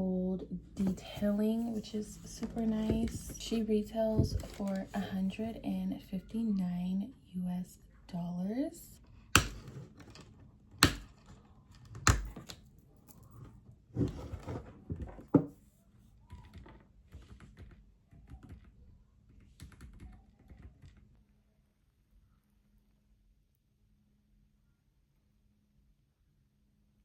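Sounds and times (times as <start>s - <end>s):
soft mechanical keyboard typing: 16.3s - 21.3s.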